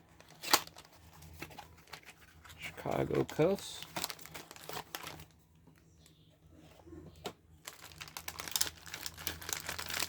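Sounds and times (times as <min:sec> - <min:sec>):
packaging crinkling: 0:00.0 - 0:05.4, 0:07.6 - 0:10.0.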